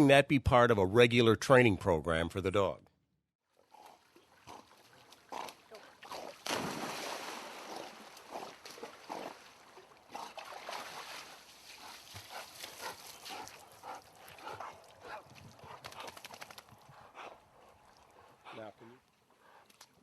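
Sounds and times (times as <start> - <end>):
water splash: 6.0 - 11.6.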